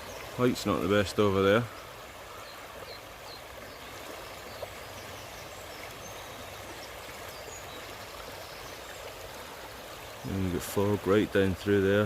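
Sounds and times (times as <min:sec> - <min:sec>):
rushing stream: 0:00.0 - 0:12.0
faint bird chirps: 0:01.6 - 0:10.4.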